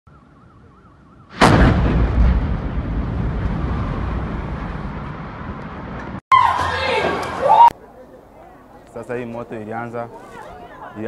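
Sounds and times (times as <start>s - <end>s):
loud explosion with low rumble: 1.3s - 6.2s.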